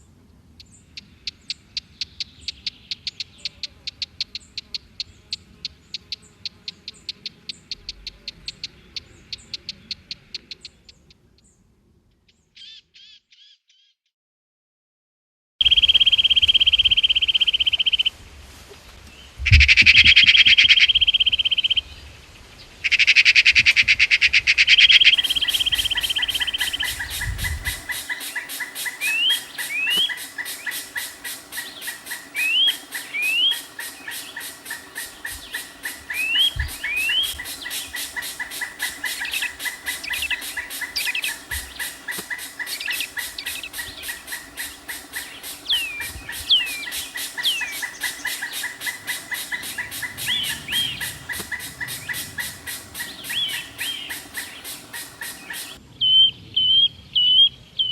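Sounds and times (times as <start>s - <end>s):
birds chirping: 0.0s - 13.6s, 15.6s - 18.1s, 19.4s - 56.2s
constant high tone: 25.0s - 55.8s
fast steady pulsing: 25.0s - 55.8s.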